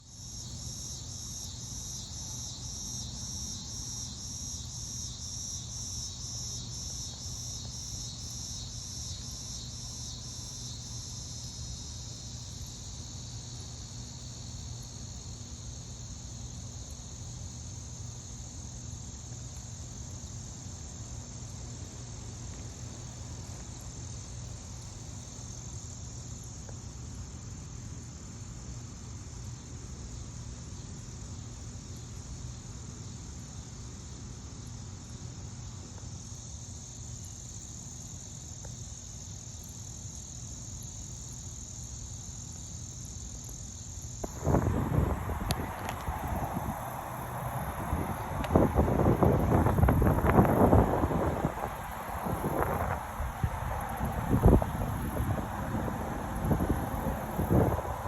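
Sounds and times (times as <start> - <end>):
insects chirping: 0.0 - 58.0
low steady rumble: 44.2 - 58.0.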